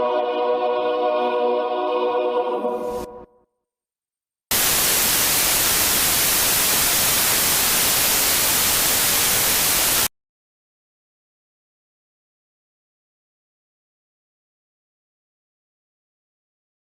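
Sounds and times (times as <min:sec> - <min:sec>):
loud white-noise static: 0:04.5 - 0:10.1.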